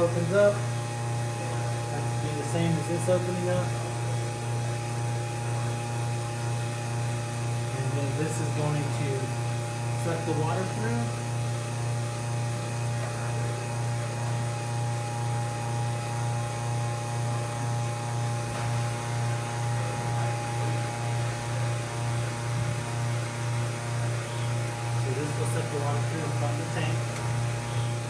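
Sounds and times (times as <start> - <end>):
electric pump humming: 0.0 - 28.0
faint high whine: 24.1 - 28.0.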